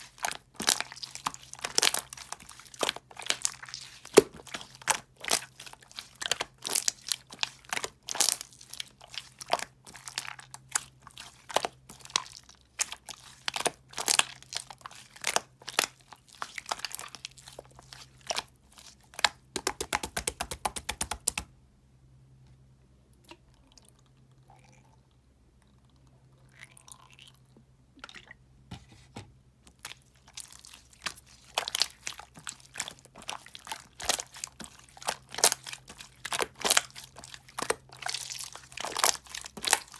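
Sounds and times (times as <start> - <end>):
gel crunching and crackling: 0.0 - 21.5, 29.7 - 39.9.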